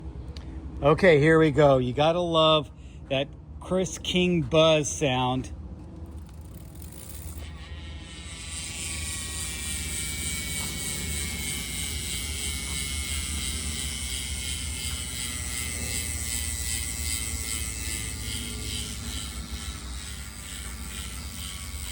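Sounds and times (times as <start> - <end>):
bicycle hub freewheel buzzing: 6.0 - 21.9.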